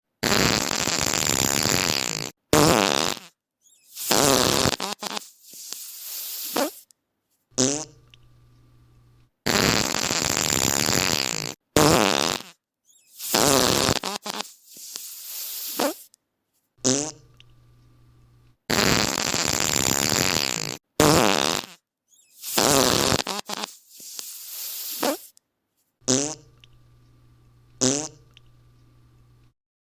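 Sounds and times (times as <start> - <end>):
fart sound effects: 0.2 - 6.8, 7.6 - 8.2, 9.5 - 16.1, 16.8 - 17.4, 18.7 - 21.8, 22.4 - 25.3, 26.1 - 26.6, 27.8 - 28.4
faint steady hum: 7.8 - 9.3, 17.1 - 18.6, 26.3 - 29.5.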